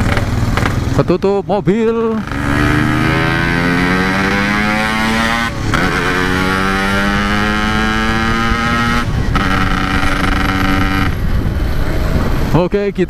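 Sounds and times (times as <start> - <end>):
two-stroke motorcycle engine accelerating: 0.0 - 12.0.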